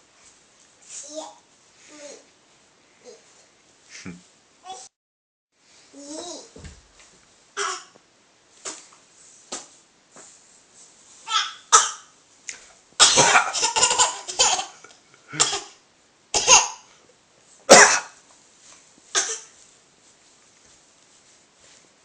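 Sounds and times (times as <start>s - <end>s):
child coughing: 11.7s - 12.1s, 13.0s - 15.8s, 16.4s - 16.9s, 17.7s - 18.2s, 19.2s - 19.5s
man coughing: 13.0s - 13.8s, 15.3s - 15.7s, 17.7s - 18.2s.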